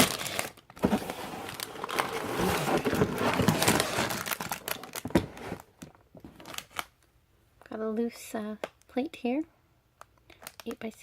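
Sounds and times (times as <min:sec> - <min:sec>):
plastic bag crinkling: 0:00.0 - 0:06.9.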